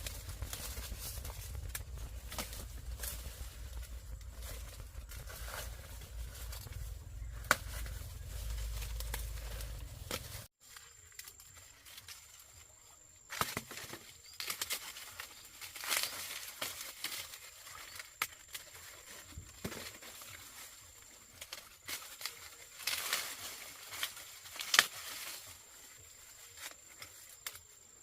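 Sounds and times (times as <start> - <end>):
low rumble: 0.0 - 10.5
rustling and crackling: 0.0 - 28.0.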